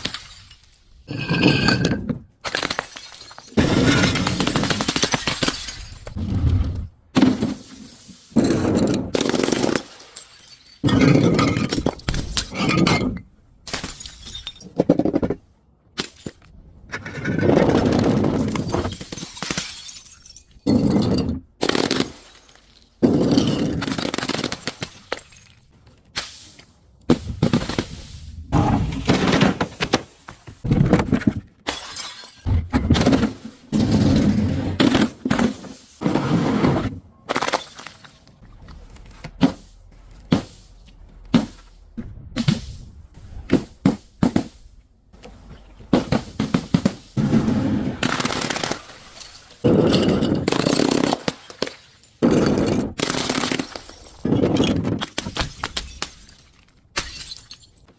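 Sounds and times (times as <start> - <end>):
glass bottles smashing: 0.0 - 6.2, 8.4 - 13.0, 13.7 - 14.8, 18.4 - 25.6, 31.6 - 34.3, 48.0 - 57.9.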